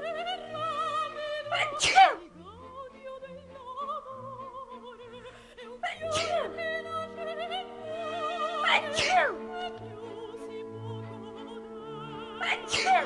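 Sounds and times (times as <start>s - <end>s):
classical accompaniment: 0.0s - 13.0s
operatic singing with vibrato: 0.0s - 13.0s
person sneezing: 1.6s - 2.2s, 6.1s - 6.5s, 8.8s - 9.4s, 12.4s - 13.0s.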